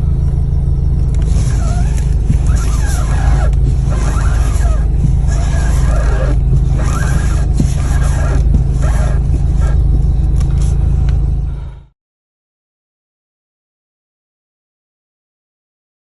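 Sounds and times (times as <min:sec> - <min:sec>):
car engine idling: 0:00.0 - 0:11.8
steering squeal: 0:00.8 - 0:11.5.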